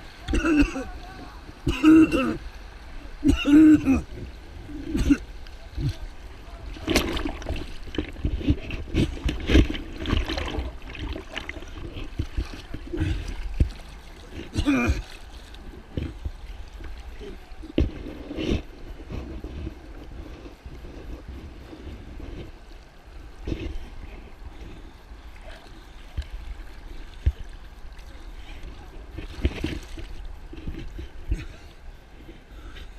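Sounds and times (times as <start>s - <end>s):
whitewater splashing in rapids: 0.0s - 18.6s.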